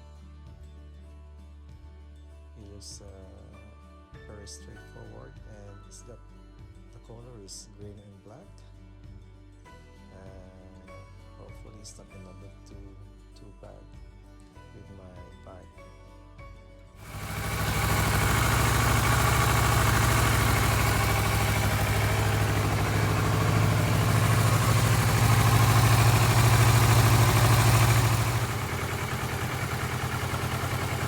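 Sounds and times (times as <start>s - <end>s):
motorcycle engine idling: 17.0s - 31.0s.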